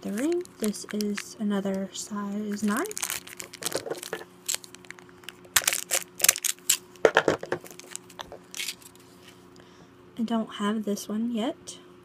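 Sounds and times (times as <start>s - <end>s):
wrapper crinkling: 0.0s - 6.8s, 7.4s - 9.0s.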